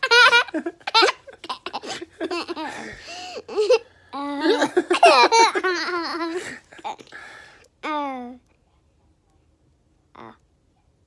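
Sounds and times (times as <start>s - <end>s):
child laughing: 0.0s - 7.0s.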